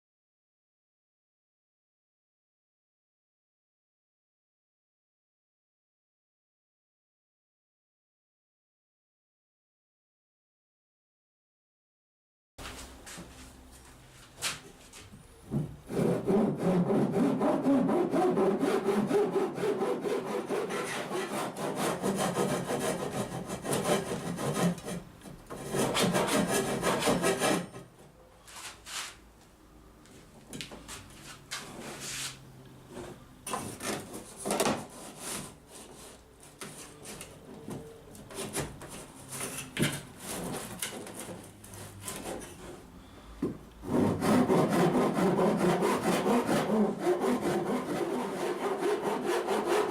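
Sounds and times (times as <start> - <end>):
saw cutting through wood: 15.9 - 25.0, 25.6 - 27.8, 43.9 - 49.9
knocks and scrapes: 30.6 - 42.9.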